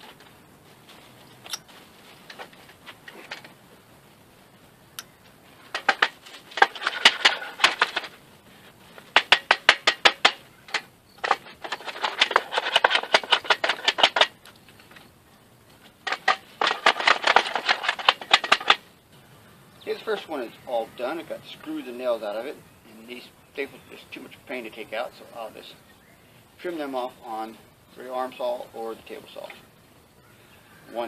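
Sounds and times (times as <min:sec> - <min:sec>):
hand tools tapping and clicking: 0:05.0 - 0:08.2, 0:08.9 - 0:15.1, 0:15.7 - 0:18.9.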